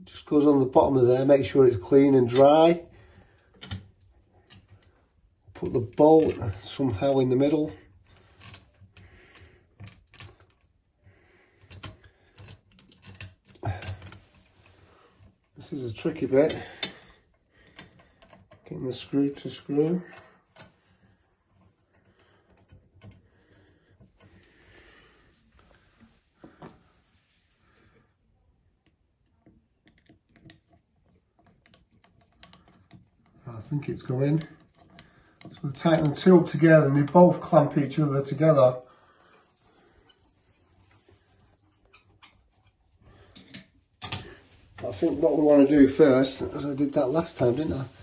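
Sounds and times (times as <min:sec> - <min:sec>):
small metal parts clicking: 0:07.5 - 0:10.8, 0:11.6 - 0:15.3, 0:29.2 - 0:33.5.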